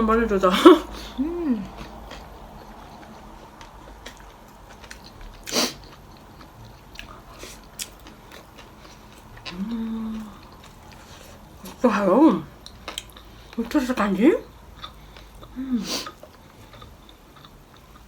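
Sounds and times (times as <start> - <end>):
person humming: 1.2 - 1.8, 9.5 - 10.4
chewing mouth clicks: 1.7 - 11.6, 12.6 - 13.6, 14.4 - 18.0.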